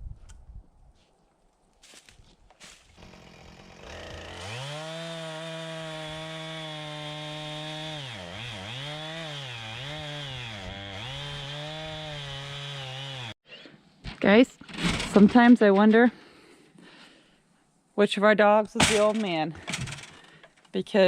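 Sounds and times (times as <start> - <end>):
chainsaw running: 2.9 - 13.4, 19.0 - 20.4.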